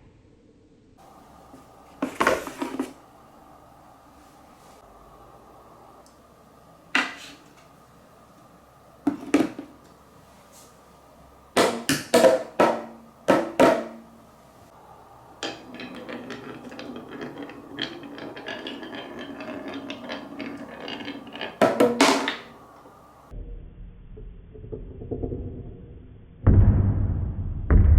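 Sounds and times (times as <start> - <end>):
balls rattling along rails: 15.1 - 23.1
balls clacking on wood: 15.2 - 23.0.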